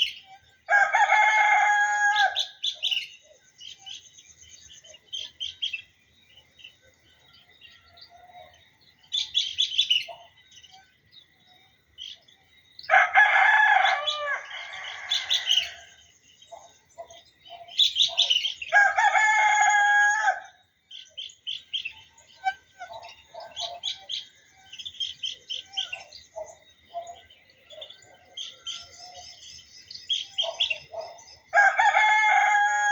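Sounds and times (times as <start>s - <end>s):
small birds chirping: 0.0s - 32.9s
rooster crowing: 0.7s - 2.6s, 12.9s - 16.0s, 18.7s - 20.6s, 31.5s - 32.9s.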